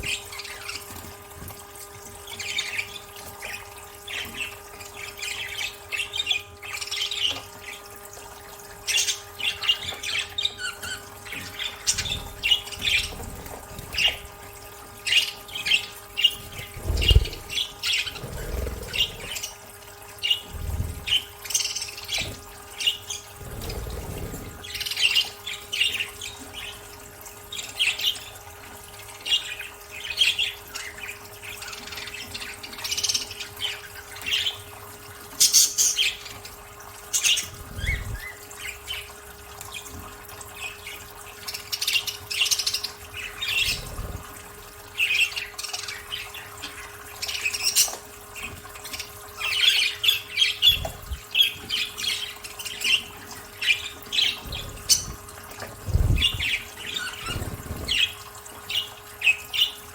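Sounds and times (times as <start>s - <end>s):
water splashing: 11.2s - 25.1s, 54.0s - 59.2s
budgerigars chirping: 15.0s - 19.6s, 49.4s - 59.8s.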